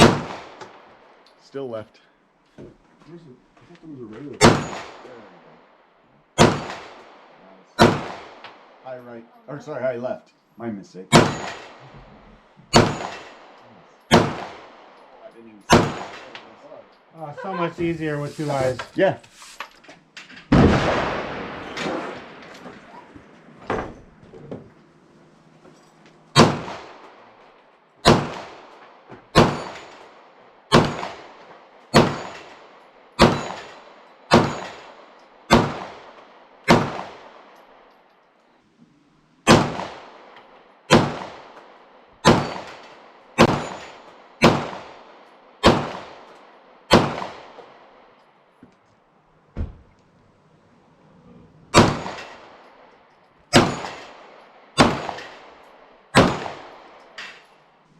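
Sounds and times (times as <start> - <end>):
pistol shots with echo: 0.0 - 1.2, 4.4 - 5.4, 6.3 - 8.8, 11.1 - 11.9, 12.7 - 15.0, 15.6 - 16.8, 26.3 - 27.4, 28.0 - 37.7, 39.4 - 48.1, 51.7 - 52.9, 53.5 - 57.4.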